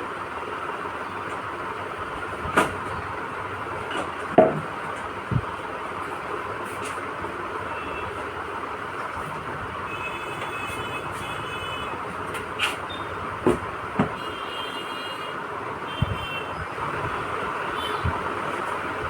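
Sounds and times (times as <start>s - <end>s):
steady background noise: 0.0s - 19.0s
sharp clicks and knocks: 3.8s - 5.5s, 12.1s - 14.2s.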